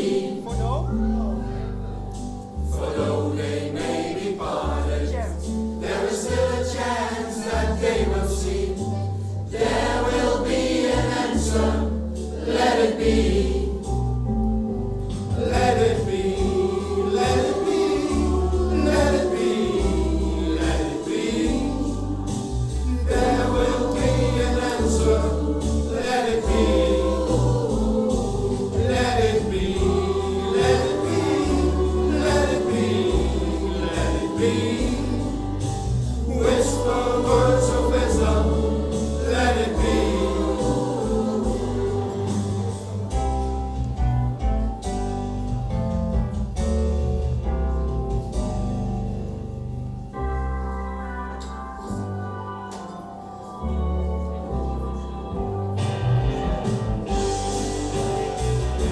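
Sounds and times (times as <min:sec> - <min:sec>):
low bass line: 0:00.0 - 0:03.8, 0:04.6 - 0:52.6, 0:53.6 - 0:58.9
choir singing: 0:00.0 - 0:14.4, 0:15.1 - 0:44.0, 0:50.6 - 0:58.9.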